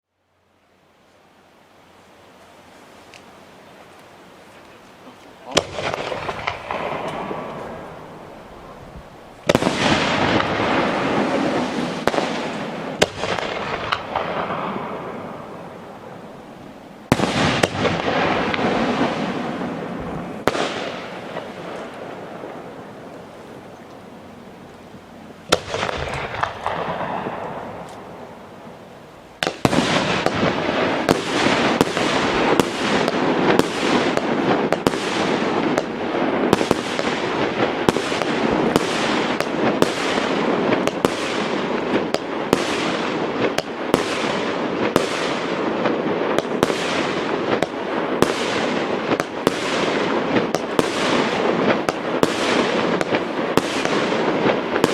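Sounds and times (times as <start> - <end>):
fireworks crackling: 1.0 - 54.9.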